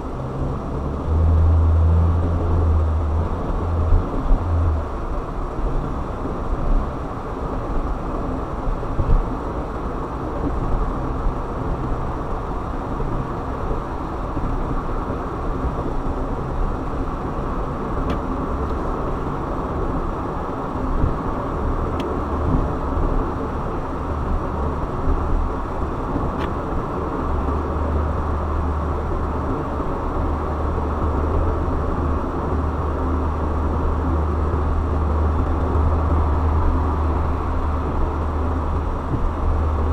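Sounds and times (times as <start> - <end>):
deep low rumble: 0.0 - 6.0, 24.1 - 39.9
car road and engine noise: 0.0 - 39.9.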